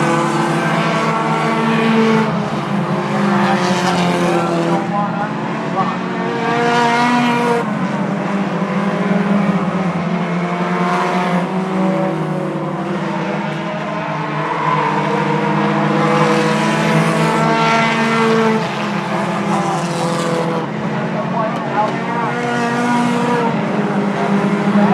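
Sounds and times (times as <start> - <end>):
race car engines droning: 0.0 - 24.9.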